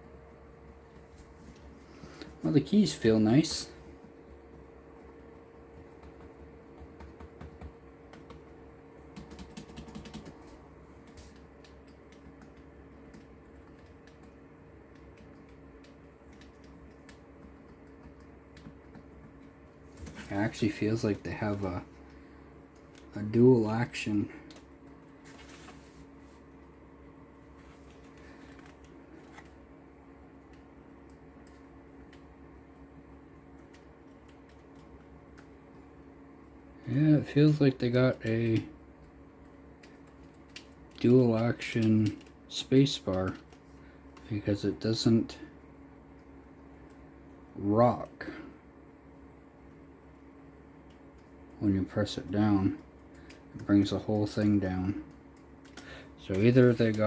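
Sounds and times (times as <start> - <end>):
faint steady hum: 0.0 - 57.0
keyboard keys clicking: 4.5 - 8.5, 9.1 - 20.2.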